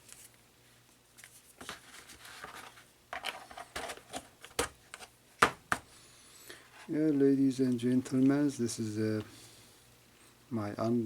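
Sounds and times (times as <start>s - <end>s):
paper and cardboard rustling: 1.1s - 5.1s.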